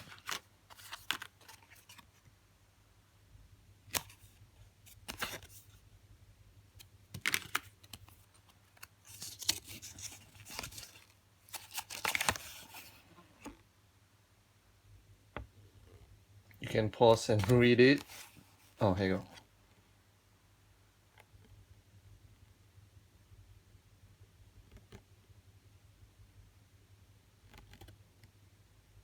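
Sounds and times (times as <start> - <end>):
packaging rustling: 0.0 - 2.2, 7.2 - 13.1, 17.1 - 19.3.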